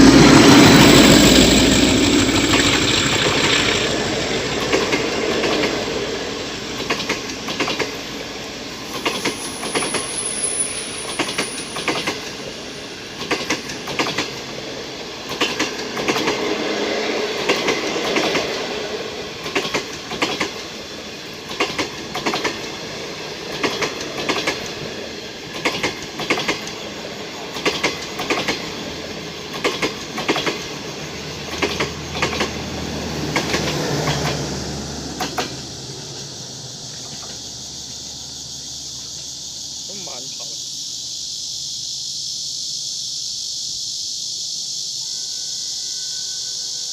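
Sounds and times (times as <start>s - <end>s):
train wheels clacking over joints: 0.0s - 16.6s, 17.3s - 36.3s, 36.9s - 37.5s
train rumble: 0.0s - 46.9s
thin high squeal: 9.0s - 12.9s.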